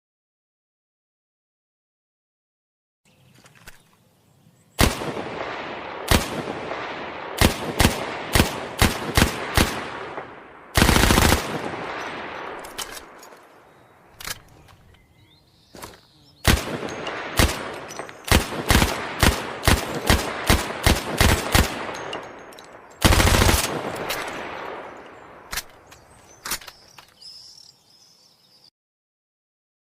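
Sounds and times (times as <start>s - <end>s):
submachine gun firing: 4.8s - 13.2s, 16.4s - 22.3s, 23.0s - 25.0s.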